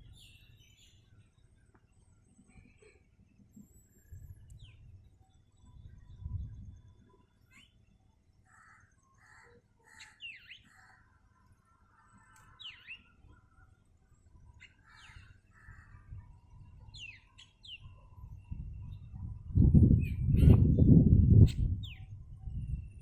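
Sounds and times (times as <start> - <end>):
songbirds chirping: 0.0 - 23.0.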